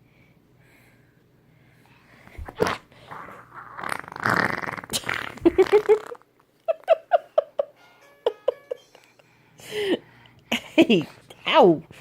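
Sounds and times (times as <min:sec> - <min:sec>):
raspberry blown on skin: 0:02.4 - 0:06.2.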